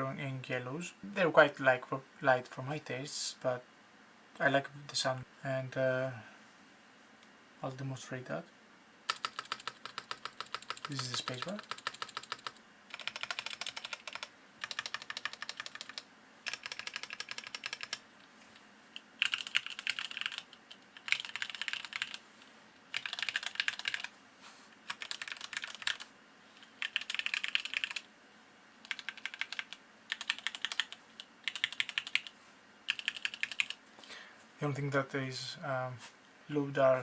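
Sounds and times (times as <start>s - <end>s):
mechanical keyboard clicking: 9.1s - 18.0s, 19.2s - 22.2s, 22.9s - 24.1s, 24.9s - 26.0s, 26.8s - 28.0s, 28.8s - 32.3s, 32.9s - 33.8s.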